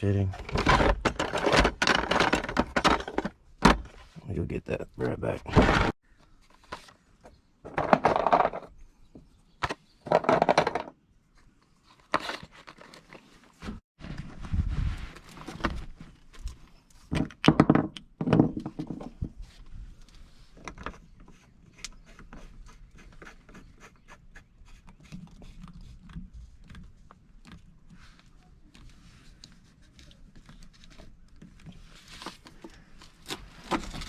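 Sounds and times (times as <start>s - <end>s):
ticking and scraping: 0.0s - 4.0s.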